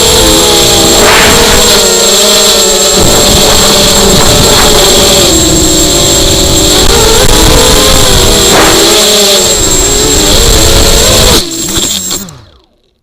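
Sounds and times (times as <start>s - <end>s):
wind noise: 0.0s - 12.0s
drone motors whining: 0.0s - 13.0s.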